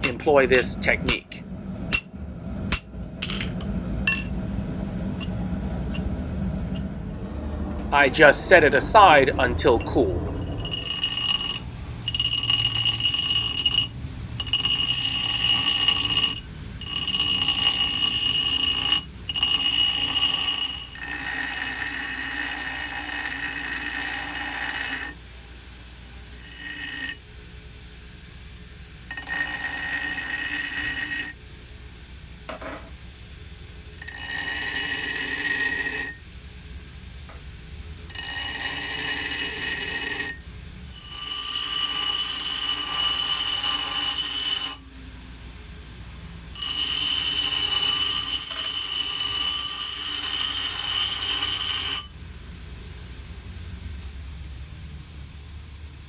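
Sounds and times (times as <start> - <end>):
steel ringing whine on grinder: 2.7 - 4.4, 9.7 - 25.2, 26.4 - 27.3, 29.1 - 31.4, 33.9 - 36.2, 38.1 - 44.9, 46.5 - 52.2
grinder running: 8.7 - 25.2, 38.1 - 44.8, 46.5 - 52.1.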